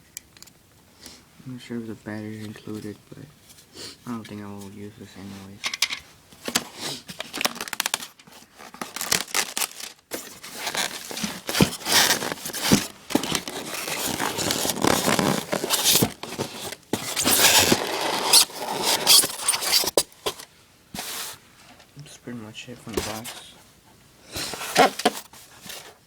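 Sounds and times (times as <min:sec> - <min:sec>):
packaging rustling and crinkling: 0:06.4 - 0:21.4, 0:24.3 - 0:26.0.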